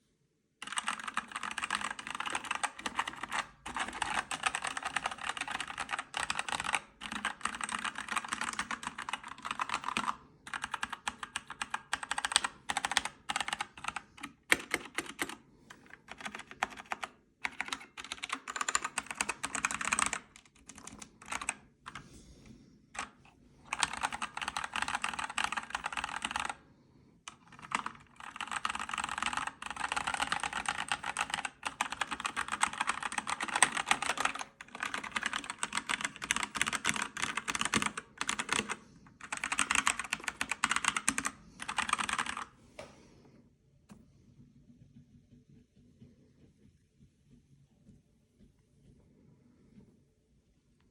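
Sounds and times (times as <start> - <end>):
mechanical keyboard typing: 0.6 - 22.0, 23.0 - 26.7, 27.3 - 42.6.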